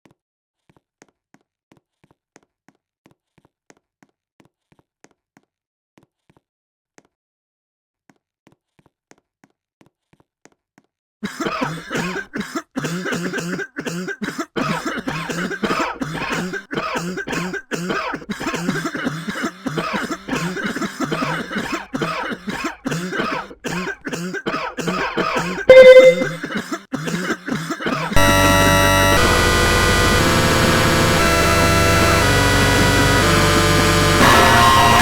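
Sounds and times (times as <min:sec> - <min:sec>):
person coughing: 0:11.2 - 0:28.2
loud short beep: 0:25.7 - 0:26.4.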